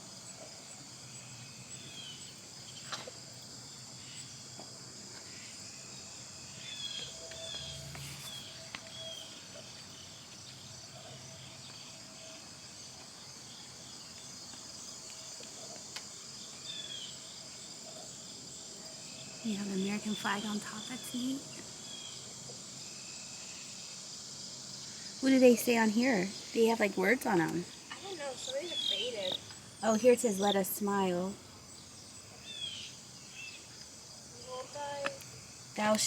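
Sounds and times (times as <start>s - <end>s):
crickets chirring: 0.0s - 36.0s.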